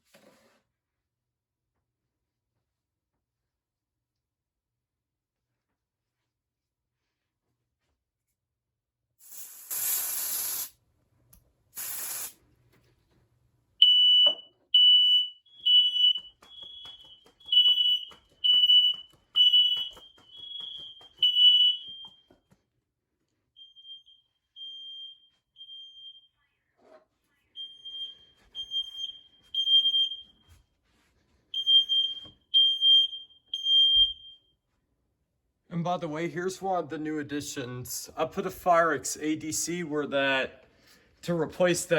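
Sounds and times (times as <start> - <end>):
aerosol spray hissing: 9.2 - 10.8, 11.8 - 12.4
smoke alarm beeping: 13.8 - 22.4, 23.6 - 26.5, 27.5 - 30.6, 31.5 - 34.7.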